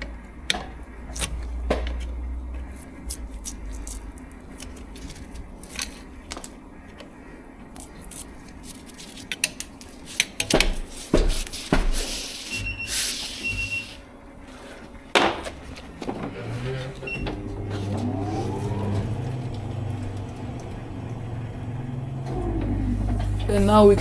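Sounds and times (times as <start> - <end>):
faint steady hum: 12.6 - 24.0.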